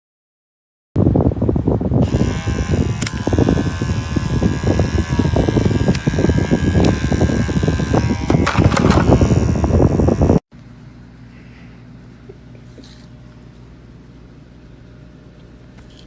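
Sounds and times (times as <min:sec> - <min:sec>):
electric clippers buzzing: 0:02.0 - 0:10.5.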